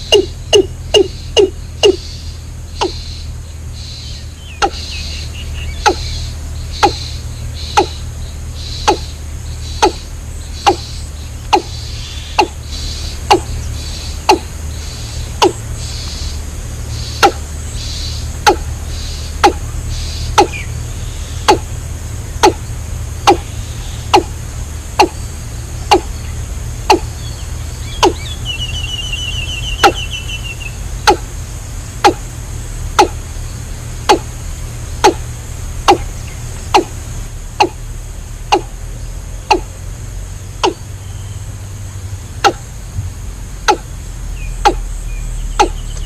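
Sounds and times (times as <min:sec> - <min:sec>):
sharp ticks: 0:00.0 - 0:02.1, 0:02.7 - 0:03.1, 0:04.6 - 0:04.9, 0:05.8 - 0:08.0, 0:08.8 - 0:09.1, 0:09.7 - 0:10.0, 0:10.6 - 0:11.8, 0:12.4 - 0:13.6, 0:14.2 - 0:14.5, 0:15.1 - 0:15.6, 0:17.2 - 0:17.4, 0:18.4 - 0:18.7, 0:19.4 - 0:19.7, 0:20.3 - 0:20.6, 0:21.5 - 0:21.7, 0:22.4 - 0:22.6, 0:23.2 - 0:23.5, 0:24.1 - 0:24.4, 0:25.0 - 0:25.2, 0:25.8 - 0:26.1, 0:26.8 - 0:27.2, 0:28.0 - 0:28.3, 0:29.6 - 0:30.2, 0:31.0 - 0:31.3, 0:32.0 - 0:32.3, 0:33.0 - 0:33.2, 0:34.0 - 0:34.4, 0:35.0 - 0:37.0, 0:37.6 - 0:37.9, 0:38.5 - 0:38.7, 0:39.4 - 0:39.8, 0:40.6 - 0:40.9, 0:42.4 - 0:42.7, 0:43.6 - 0:43.9, 0:44.6 - 0:44.9, 0:45.6 - 0:46.0
low hum: 0:00.0 - 0:46.0
rapid chirping trill: 0:00.0 - 0:46.0.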